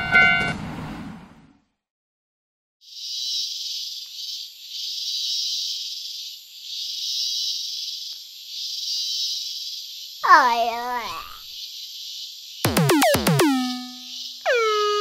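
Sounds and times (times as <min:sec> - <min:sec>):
insects chirring: 0:02.9 - 0:12.6.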